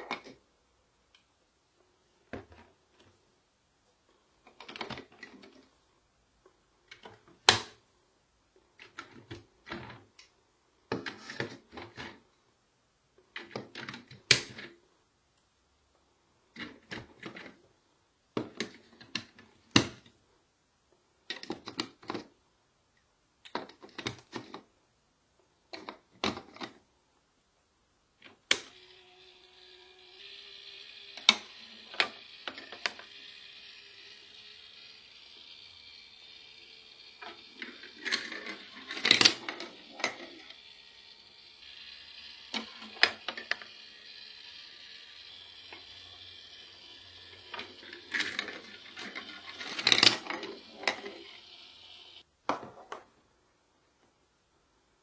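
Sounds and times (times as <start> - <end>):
plastic toy pieces clicking: 29.5 - 52.0.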